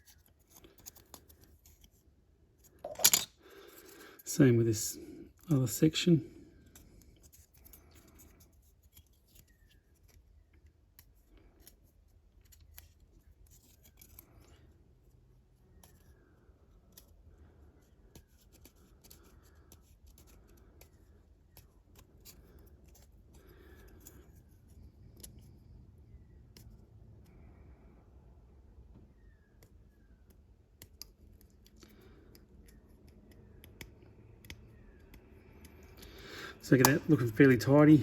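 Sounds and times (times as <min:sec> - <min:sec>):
plastic parts clicking and scraping: 0:11.0 - 0:14.7.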